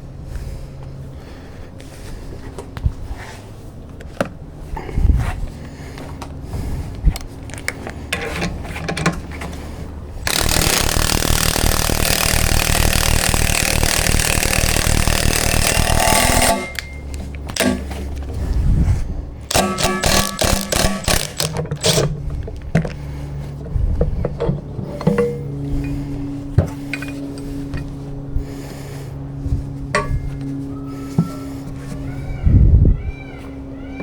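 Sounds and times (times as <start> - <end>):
power tool rattling: 7.5 - 18.2, 19.5 - 23.2.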